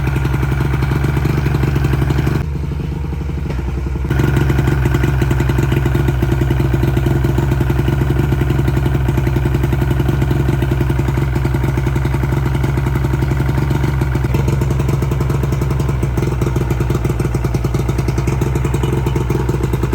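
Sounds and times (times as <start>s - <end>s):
engine running steadily: 0.0s - 19.9s.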